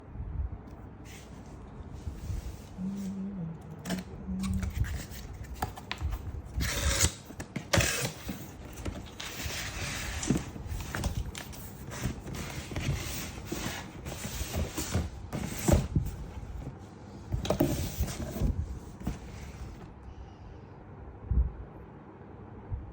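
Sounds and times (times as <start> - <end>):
cardboard box rustling and scraping: 3.9 - 19.9.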